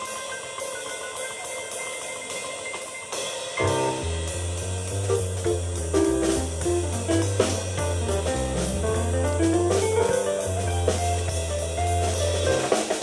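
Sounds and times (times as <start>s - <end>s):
drums and cymbals beat: 0.0s - 13.0s
keyboard bass notes: 3.6s - 12.8s.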